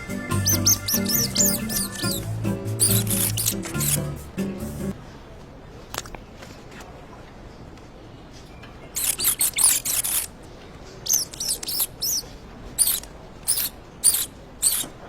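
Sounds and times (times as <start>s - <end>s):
high-pitched squeaks: 0.0s - 4.2s, 9.0s - 10.3s, 11.0s - 12.2s, 12.8s - 14.9s.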